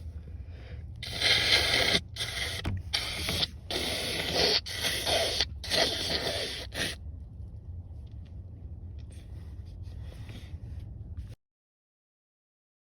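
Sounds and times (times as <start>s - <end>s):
person blowing nose: 1.0s - 7.0s.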